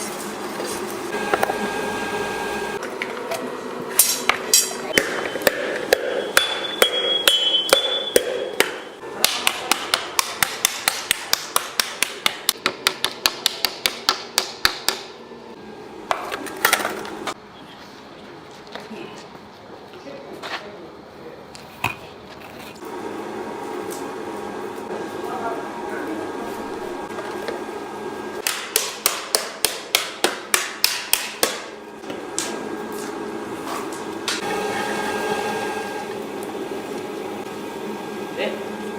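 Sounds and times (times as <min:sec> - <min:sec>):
hammers striking metal: 0:04.0 - 0:15.2, 0:28.4 - 0:31.8.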